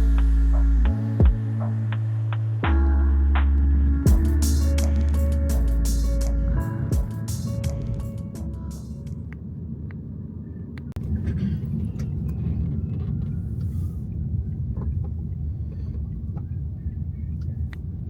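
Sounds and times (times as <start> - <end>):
car rumbling on the move: 0.0 - 9.4.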